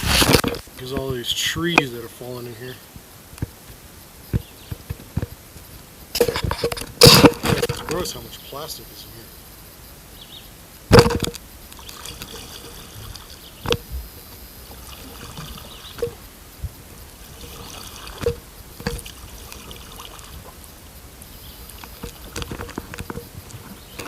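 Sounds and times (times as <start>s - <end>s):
hollow knocks against kayak hull: 4.3s - 5.4s
water trickling and dripping: 11.2s - 24.0s.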